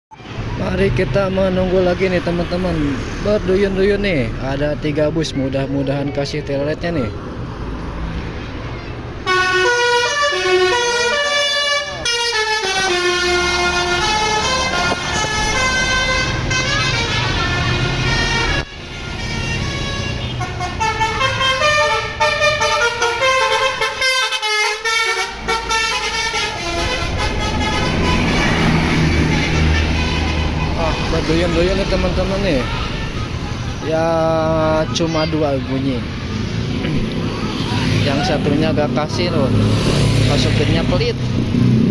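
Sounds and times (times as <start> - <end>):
bus engines rumbling: 0.1 - 41.9
multi-tone bus horn melodies: 9.2 - 31.8.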